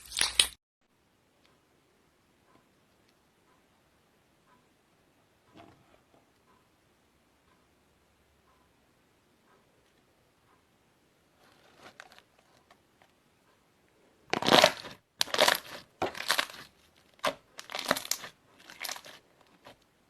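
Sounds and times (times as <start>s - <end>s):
slime squishing by hand: 14.3s - 19.8s.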